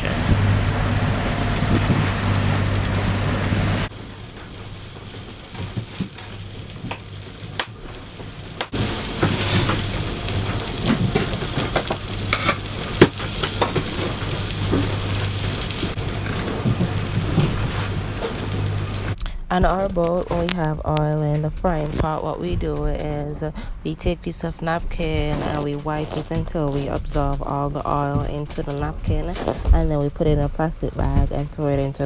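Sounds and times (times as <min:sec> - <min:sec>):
sausage and shrimp sizzling: 0:02.1 - 0:19.2.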